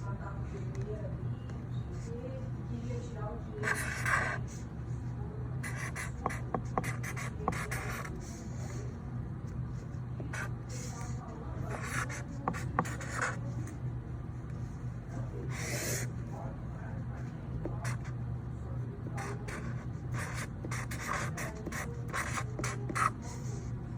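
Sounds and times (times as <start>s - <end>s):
pen scratching on paper: 3.6s - 4.6s, 5.6s - 8.8s, 9.7s - 13.8s, 14.5s - 16.3s, 17.2s - 18.2s, 19.0s - 23.7s.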